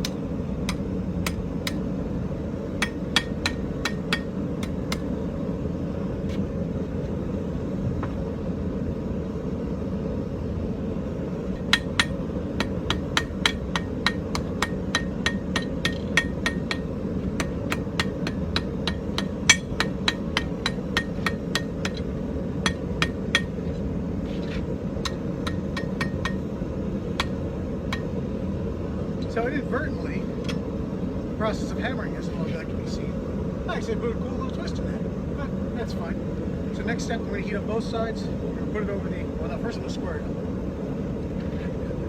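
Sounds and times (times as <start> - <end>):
hammer striking iron on anvil: 0.0 - 1.9, 2.8 - 5.1, 11.6 - 23.6, 25.0 - 26.5, 27.2 - 28.2.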